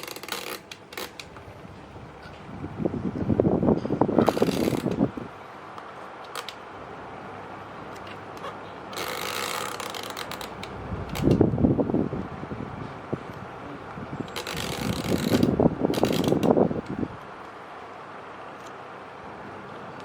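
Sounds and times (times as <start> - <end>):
mechanical clicking and rattling: 0.0 - 2.5, 3.7 - 5.3, 6.2 - 6.6, 7.9 - 11.6, 14.2 - 17.1
box fan running: 0.0 - 20.0.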